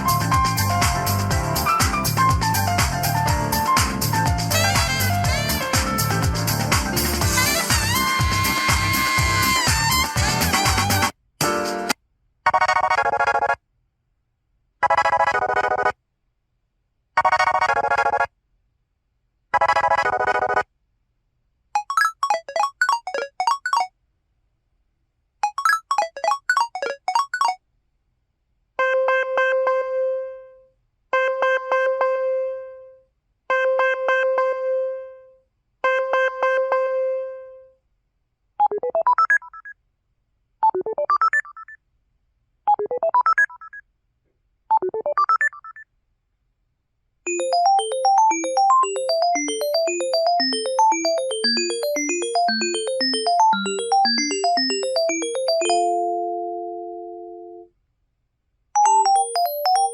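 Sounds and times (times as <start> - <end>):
phone trilling ring: 47.3 - 57.6, 58.8 - 59.9
plinking electronic melody: 47.3 - 57.7, 58.8 - 59.9.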